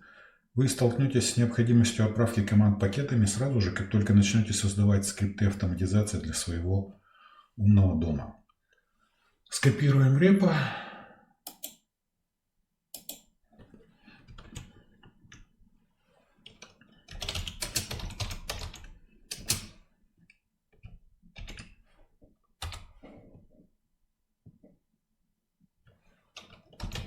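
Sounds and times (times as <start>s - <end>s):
computer keyboard typing: 16.5s - 19.7s, 21.4s - 21.7s, 22.6s - 22.9s, 26.4s - 27.0s.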